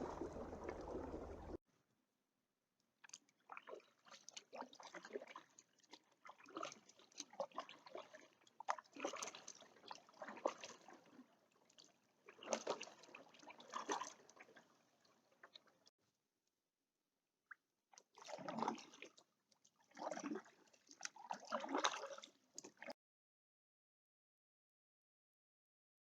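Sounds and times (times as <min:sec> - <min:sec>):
kayak paddles dipping into water: 0:00.0 - 0:01.6, 0:03.1 - 0:15.7, 0:18.0 - 0:19.2, 0:19.8 - 0:22.9
water splashes and drips: 0:00.0 - 0:01.6, 0:03.0 - 0:15.9, 0:18.0 - 0:23.0.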